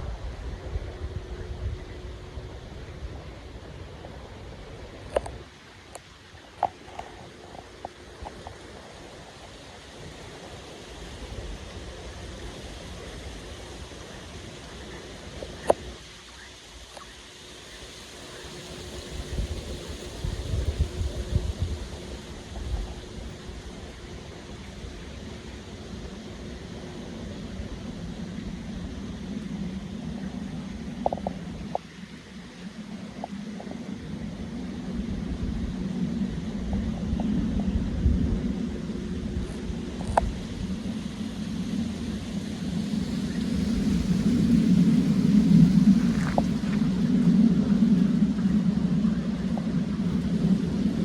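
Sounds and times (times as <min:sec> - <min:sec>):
steady rain: 0:00.0 - 0:51.0
wind noise: 0:00.0 - 0:51.0
wind gusting: 0:17.7 - 0:25.4, 0:34.5 - 0:51.0.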